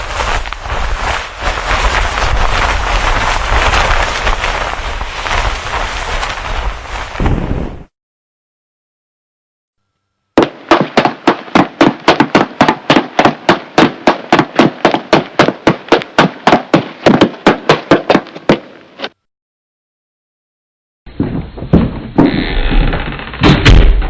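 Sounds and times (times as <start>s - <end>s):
fast footsteps: 0.0s - 7.3s, 10.4s - 19.2s.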